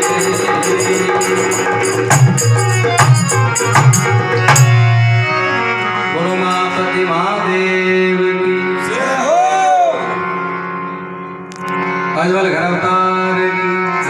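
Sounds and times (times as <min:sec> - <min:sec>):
fast metallic jingle: 0:00.0 - 0:04.7
melodic drone with sliding pitches: 0:00.0 - 0:14.0.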